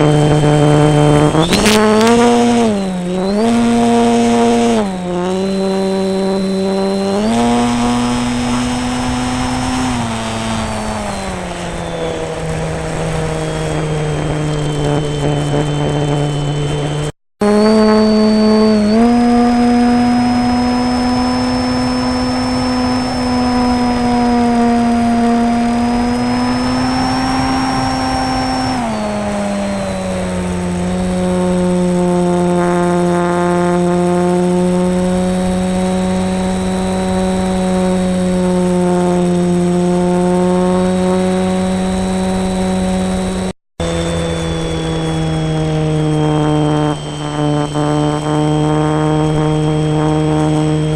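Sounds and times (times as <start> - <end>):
model plane electric motor: 0.0 - 50.9.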